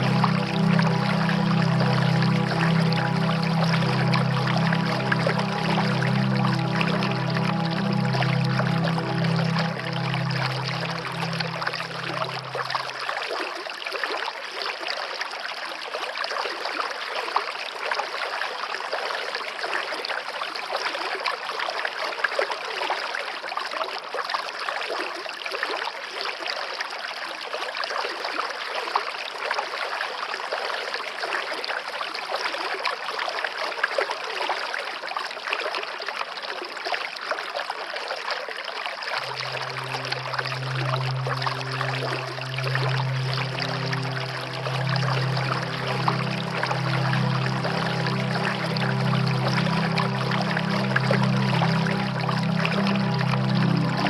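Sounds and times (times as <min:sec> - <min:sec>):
low steady hum: 0:00.0 - 0:13.4, 0:39.2 - 0:54.0
waterfall rushing and splashing: 0:39.2 - 0:54.0.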